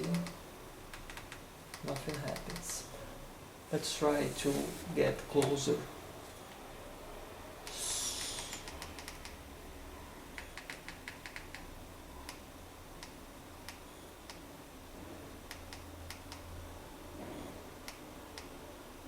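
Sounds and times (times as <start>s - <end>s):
remote control buttons clicking: 8.4s - 9.4s, 10.4s - 12.4s, 15.5s - 16.5s.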